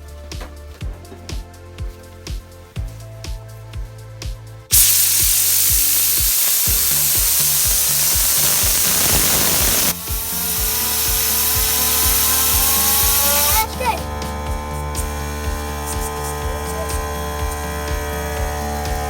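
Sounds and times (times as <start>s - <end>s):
background music with steady beat: 0.0s - 19.0s
loud whirring hissing noise: 4.7s - 19.0s.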